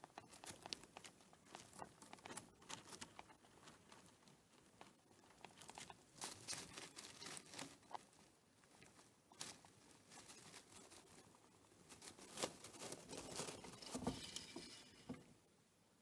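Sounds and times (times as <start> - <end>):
small irregular clicks: 0.0 - 11.0
hamster rustling: 0.0 - 15.4.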